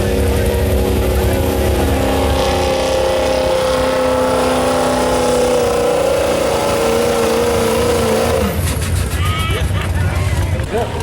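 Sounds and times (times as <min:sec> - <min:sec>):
truck engine at high revs: 0:00.0 - 0:11.0.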